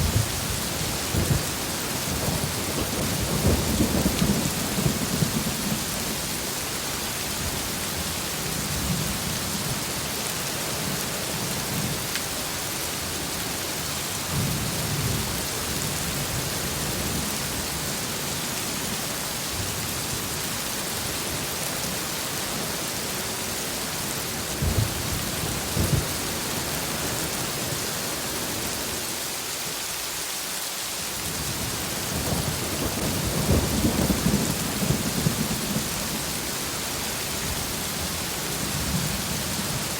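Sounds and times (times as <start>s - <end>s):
thunder rumbling: 0.0s - 6.2s
heavy rain pouring: 0.0s - 39.9s.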